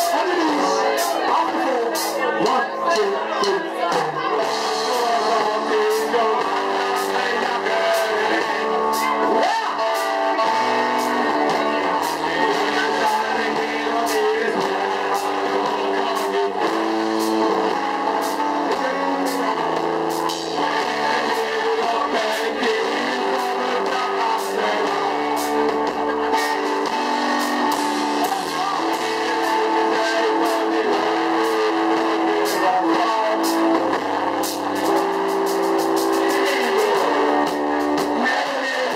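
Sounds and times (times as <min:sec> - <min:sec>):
live band playing guitar song: 0:00.0 - 0:38.9.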